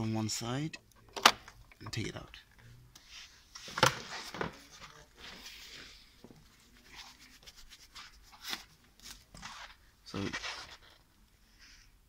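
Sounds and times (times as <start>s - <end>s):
soft rub: 3.0s - 11.9s.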